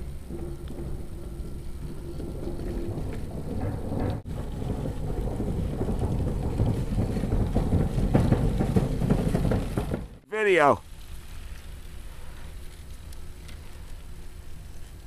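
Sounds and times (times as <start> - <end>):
wind buffeting microphone: 0.0 - 10.2.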